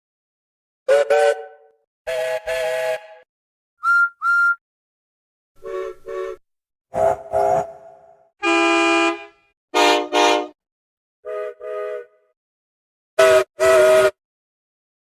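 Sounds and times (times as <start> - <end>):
steady horn blast: 7.0 - 10.6, 13.2 - 14.2
vehicle horns tooting: 8.4 - 10.6.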